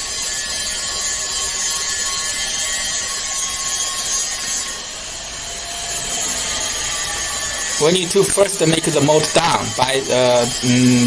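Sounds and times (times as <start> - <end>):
hydraulic unit and fans hissing: 4.8 - 11.0.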